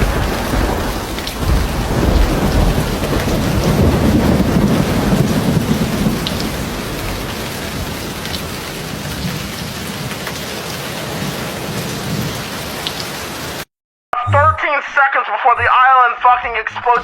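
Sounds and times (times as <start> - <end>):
low thunder rumble: 0.0 - 10.1
heavy rain: 0.0 - 13.7.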